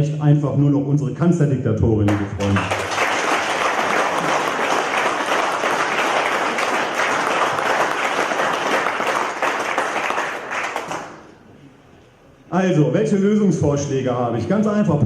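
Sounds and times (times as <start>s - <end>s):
audience applauding: 2.1s - 11.4s.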